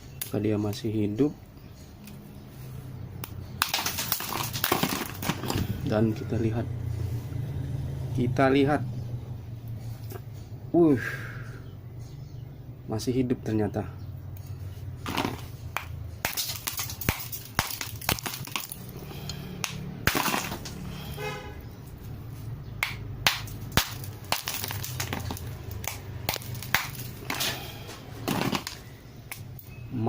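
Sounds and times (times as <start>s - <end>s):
ice cracking and crunching: 3.6s - 5.7s, 16.2s - 18.8s, 20.1s - 20.8s, 23.7s - 27.6s, 28.2s - 28.9s.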